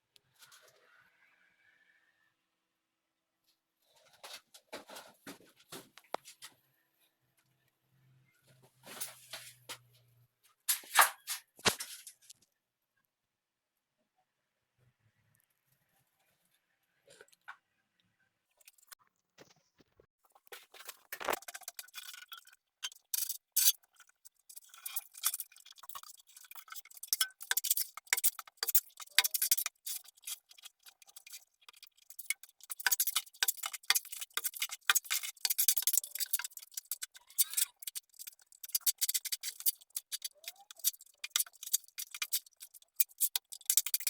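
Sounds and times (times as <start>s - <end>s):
scratchy scraping: 20.5s - 44.0s.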